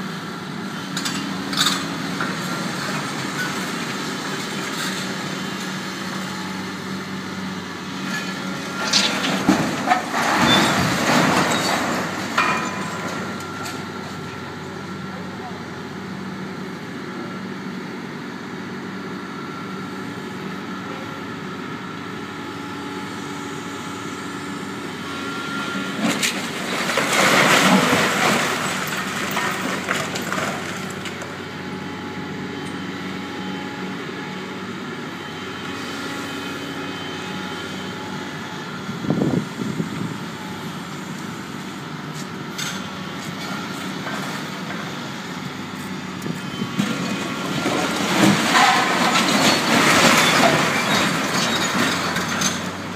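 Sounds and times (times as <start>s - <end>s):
excavator diesel engine running: 0.0s - 52.9s
demolition crashing: 8.5s - 13.8s, 26.0s - 31.4s, 46.7s - 52.9s.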